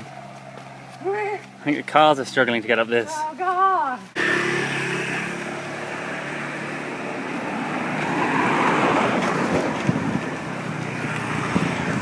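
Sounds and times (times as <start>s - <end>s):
vehicle engine straining uphill: 4.0s - 12.0s.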